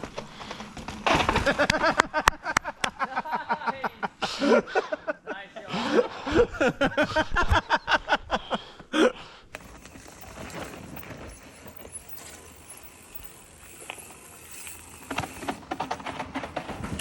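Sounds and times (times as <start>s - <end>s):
person laughing: 1.5s - 8.7s
bike hub ratchet ticking: 9.5s - 17.0s.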